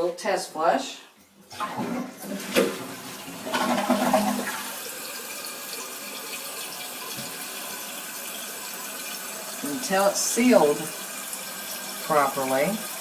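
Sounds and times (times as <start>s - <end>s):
toilet flush click: 1.5s - 9.6s
toilet tank refilling hiss: 1.5s - 13.0s
toilet water rushing: 1.5s - 13.0s.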